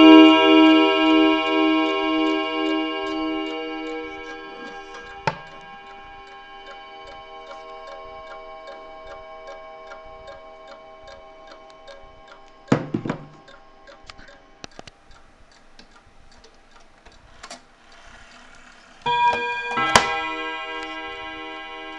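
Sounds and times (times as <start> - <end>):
clock chime ringing: 0.0 - 14.6, 19.0 - 21.9
mantel clock ticking: 0.0 - 21.9.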